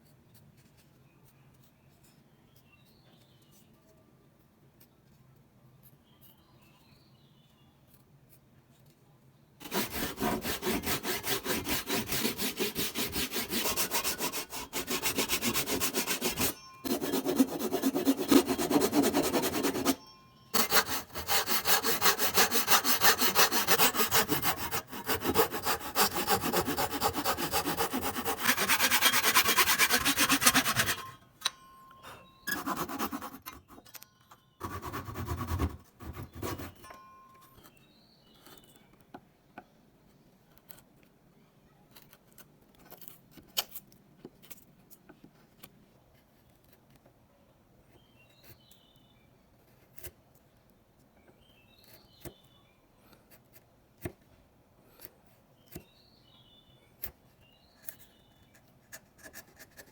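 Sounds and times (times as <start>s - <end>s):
hand saw cutting wood: 9.6s - 20.0s, 20.6s - 31.2s, 32.5s - 33.6s, 34.6s - 36.8s
short scraping strokes: 20.6s - 31.2s.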